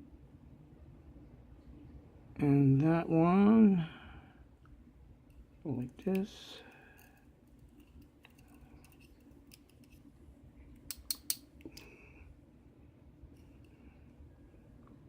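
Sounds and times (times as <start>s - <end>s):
metallic clicks of lock pins: 10.8s - 11.9s.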